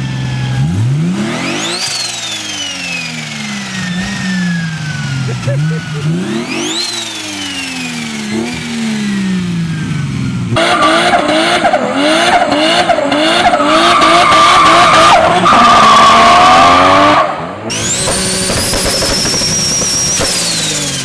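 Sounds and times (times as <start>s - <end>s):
car engine revving in surges: 0.0s - 21.0s
car engine winding down: 0.0s - 21.0s
high tire squeal: 10.6s - 21.0s.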